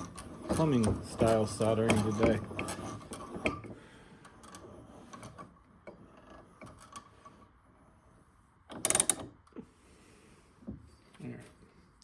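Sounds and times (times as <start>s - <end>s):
tools and parts clicking: 8.7s - 9.4s.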